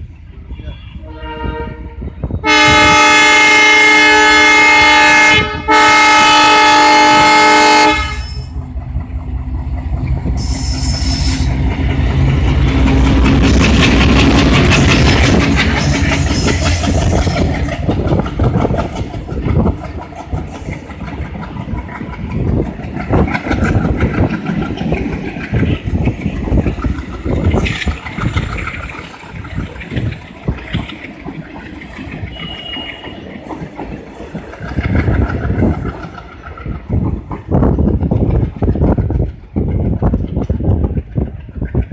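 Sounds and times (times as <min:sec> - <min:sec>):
train rumble: 0:00.0 - 0:41.9
train wheels clattering over rail joints: 0:08.5 - 0:41.9.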